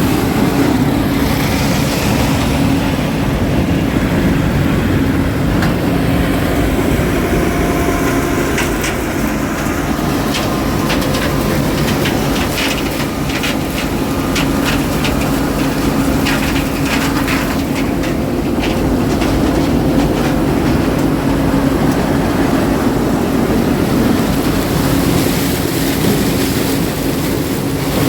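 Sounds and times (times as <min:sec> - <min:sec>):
farm machinery engine running: 0:00.0 - 0:28.0
irregular clicks and rattles: 0:08.1 - 0:22.1.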